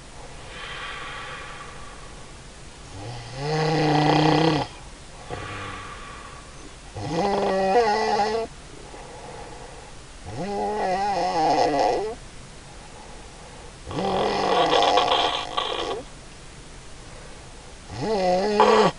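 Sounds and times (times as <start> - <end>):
quiet breaths: 0.0 - 7.5, 8.4 - 10.3, 12.1 - 16.2, 16.9 - 17.9
woman snoring: 3.0 - 6.4, 13.9 - 16.0, 17.9 - 18.9.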